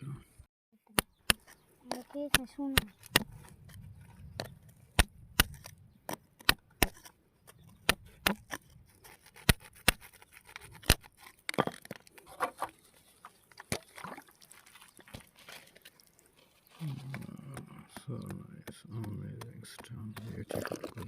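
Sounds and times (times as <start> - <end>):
hard objects clicking and knocking: 1.0 - 13.9, 17.0 - 21.0.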